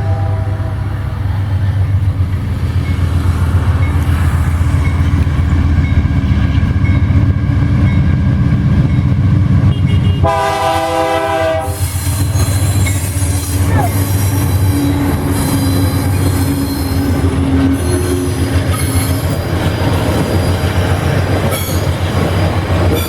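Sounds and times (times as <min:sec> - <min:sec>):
train air horn chord: 0:00.0 - 0:01.1, 0:09.7 - 0:11.9
diesel locomotive engine rumble: 0:00.0 - 0:23.0.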